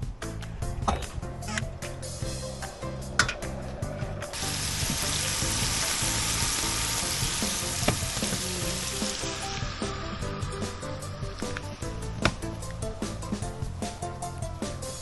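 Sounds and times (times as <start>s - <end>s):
background music: 0.0s - 15.0s
food sizzling in a pan: 4.3s - 10.2s.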